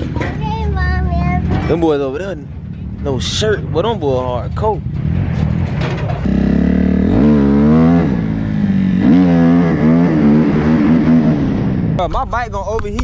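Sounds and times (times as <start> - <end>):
dirt bike engine revving: 4.8 - 12.0.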